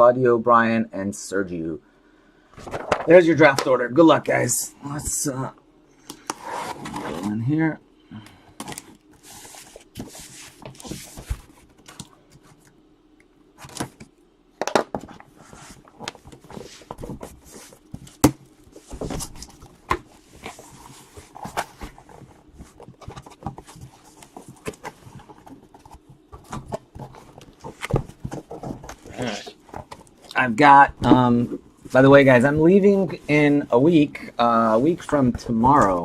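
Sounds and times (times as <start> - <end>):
cardboard rustling and scraping: 6.3 - 7.5, 8.6 - 12.6, 14.9 - 36.0.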